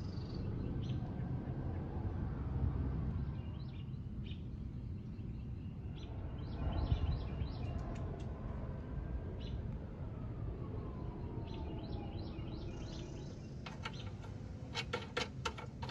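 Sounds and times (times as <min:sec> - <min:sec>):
birds chirping: 0:11.4 - 0:15.9.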